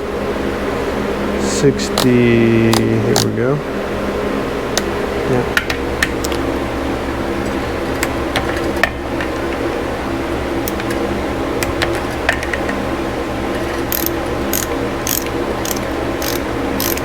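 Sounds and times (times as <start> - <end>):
steady machine hum: 0.0 - 17.0
tools knocking on metal: 8.0 - 9.6
ratchet wrench clicking: 13.6 - 17.0.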